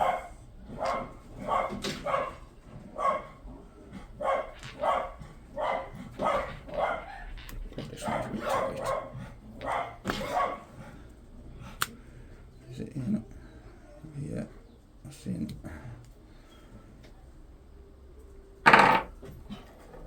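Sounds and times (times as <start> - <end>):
dog barking: 0.0 - 3.4, 4.2 - 7.3, 8.0 - 10.9.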